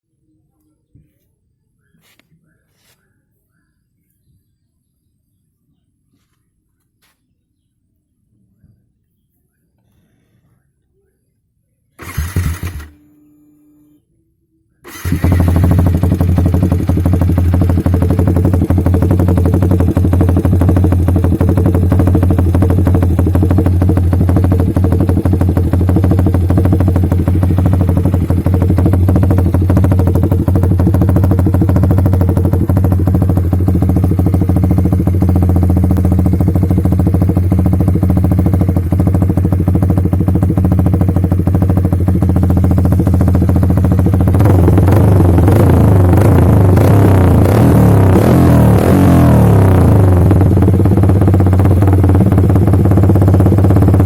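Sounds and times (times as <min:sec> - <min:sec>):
motorcycle engine idling: 0:12.0 - 0:13.1, 0:14.8 - 0:54.0.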